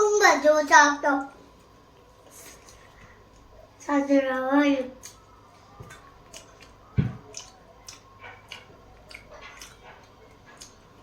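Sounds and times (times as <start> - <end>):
wet chewing and smacking: 4.9 - 11.0.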